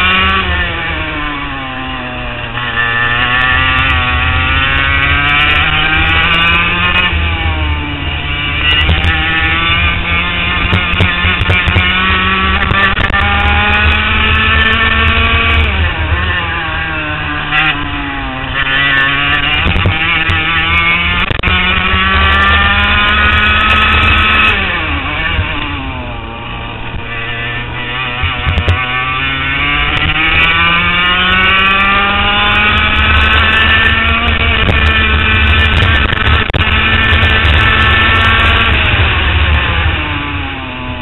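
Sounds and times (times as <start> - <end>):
kart two-stroke engine revving: 0.0 - 41.0.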